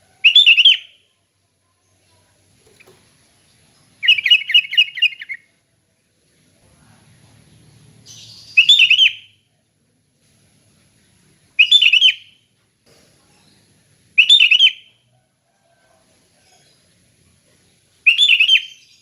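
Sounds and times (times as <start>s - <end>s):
bulbul singing: 0.2s - 1.1s, 2.7s - 5.5s, 8.0s - 9.5s, 11.6s - 12.5s, 13.4s - 15.0s, 18.0s - 19.0s.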